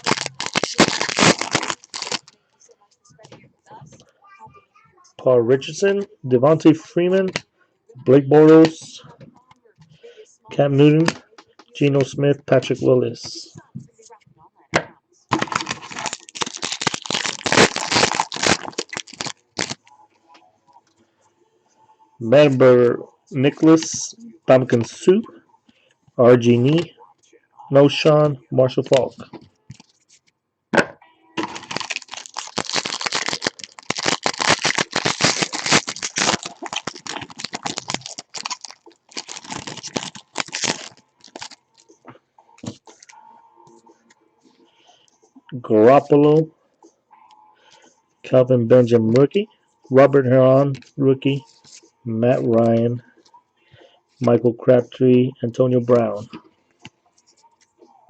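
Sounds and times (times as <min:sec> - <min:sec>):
foil wrapper crinkling: 0:00.0 - 0:02.3, 0:15.3 - 0:19.8, 0:31.4 - 0:42.0.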